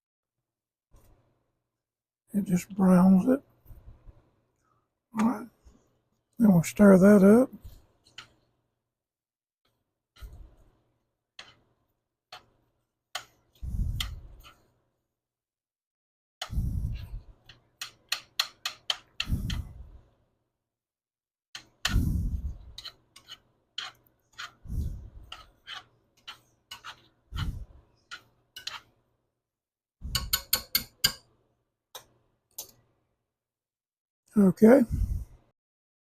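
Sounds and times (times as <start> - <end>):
utensils tapping and scraping skillet: 7.6 - 8.5, 11.3 - 14.8, 17.2 - 19.6, 21.6 - 29.0, 30.0 - 31.3, 32.0 - 32.9.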